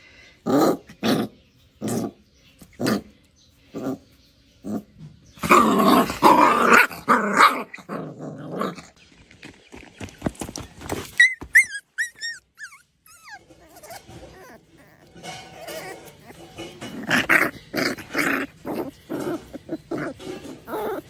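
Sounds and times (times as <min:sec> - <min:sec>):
puppy growling and yapping: 0:00.5 - 0:03.1, 0:03.7 - 0:04.0, 0:04.6 - 0:09.0, 0:11.1 - 0:21.0
short high wavering squeaks: 0:11.2 - 0:16.0.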